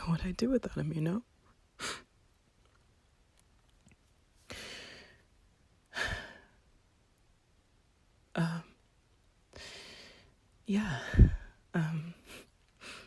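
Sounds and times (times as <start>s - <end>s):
woman breathing: 4.4s - 5.3s, 5.9s - 6.7s, 9.5s - 13.0s
heavy sigh: 5.9s - 6.6s, 9.6s - 13.0s.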